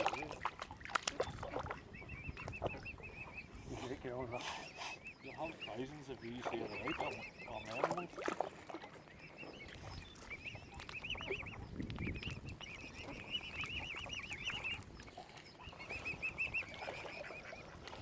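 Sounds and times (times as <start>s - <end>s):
cygnets peeping: 0.0s - 18.0s.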